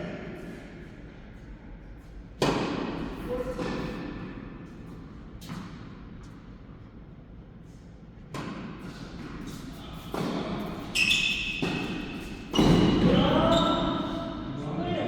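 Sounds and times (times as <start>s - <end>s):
brief high squeak: 10.9s - 12.8s.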